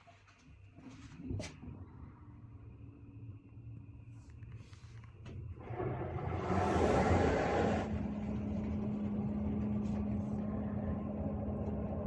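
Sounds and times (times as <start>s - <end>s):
washing machine humming: 0.8s - 12.0s
washing machine rushing noise: 5.5s - 12.0s.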